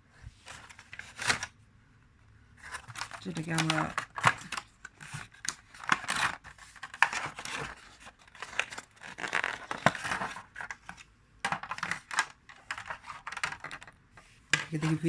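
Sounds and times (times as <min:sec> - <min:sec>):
packaging rustling and tearing: 0:02.6 - 0:13.9.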